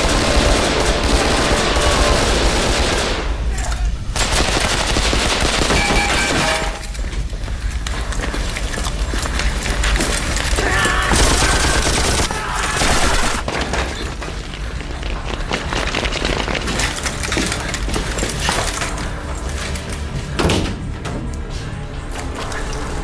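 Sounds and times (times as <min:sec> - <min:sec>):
volleys of gunfire: 0:00.0 - 0:03.5, 0:04.1 - 0:06.8, 0:10.2 - 0:14.0.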